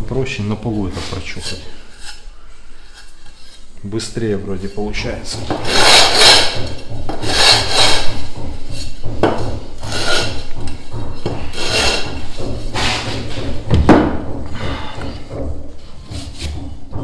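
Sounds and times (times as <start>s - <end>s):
tile knocking: 5.2s - 17.0s
tile rasping on concrete: 5.5s - 10.5s, 11.3s - 13.4s.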